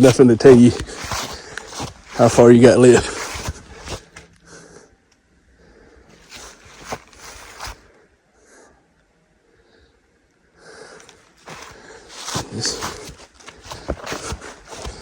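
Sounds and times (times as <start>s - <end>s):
boot footsteps crunching on trail: 0.0s - 4.3s, 6.1s - 7.9s, 11.0s - 15.0s
soft breathing: 0.7s - 15.0s.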